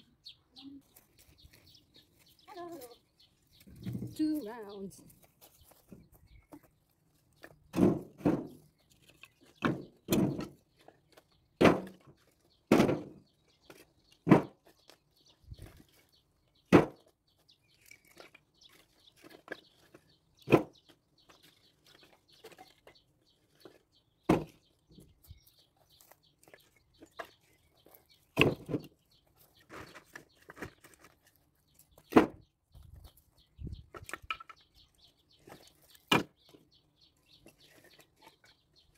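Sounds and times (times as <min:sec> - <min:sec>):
wooden logs knocking together: 0:07.4 - 0:15.9, 0:16.6 - 0:17.2, 0:17.8 - 0:25.2, 0:26.0 - 0:33.1, 0:33.7 - 0:36.7.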